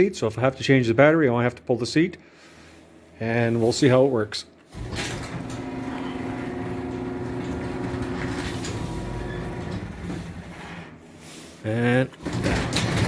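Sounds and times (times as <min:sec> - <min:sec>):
garage door motor humming: 0:04.7 - 0:11.5, 0:12.1 - 0:13.0.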